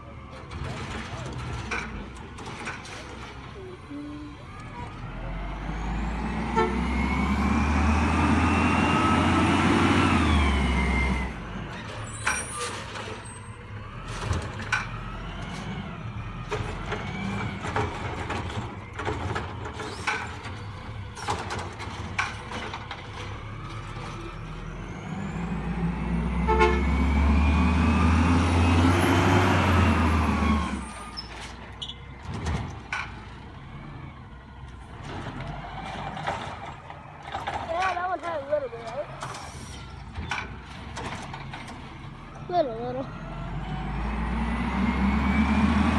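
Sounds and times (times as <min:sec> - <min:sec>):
garbage truck hydraulics whining: 0:00.0 - 0:45.9
clanks and bangs: 0:00.3 - 0:03.5, 0:11.6 - 0:24.7, 0:34.9 - 0:42.2.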